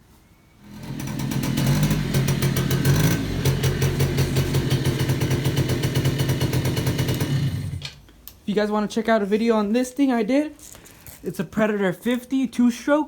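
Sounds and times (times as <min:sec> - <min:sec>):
small engine idling: 0:00.6 - 0:08.0.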